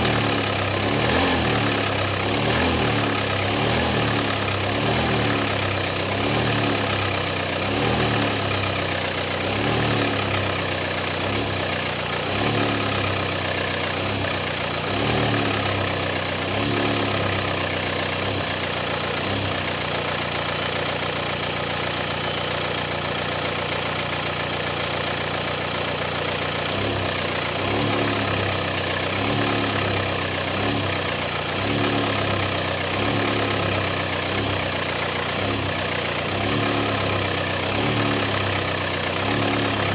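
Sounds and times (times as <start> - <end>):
car engine idling with knocking: 0.0 - 39.9.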